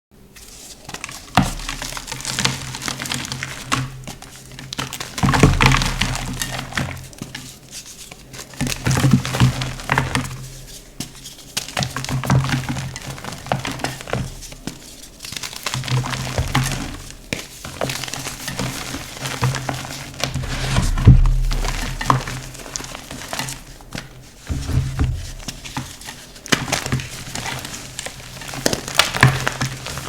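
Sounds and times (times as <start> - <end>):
chalk crunching by hand: 20.2 - 23.8.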